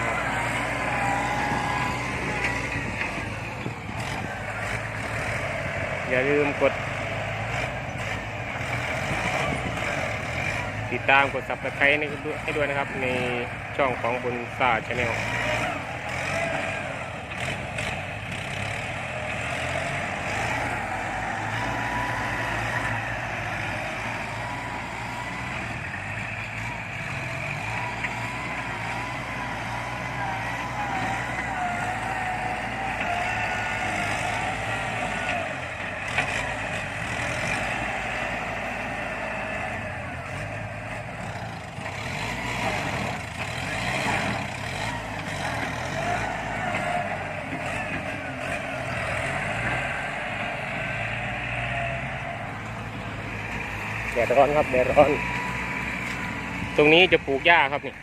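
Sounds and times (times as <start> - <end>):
tractor diesel engine running: 0.0 - 58.0.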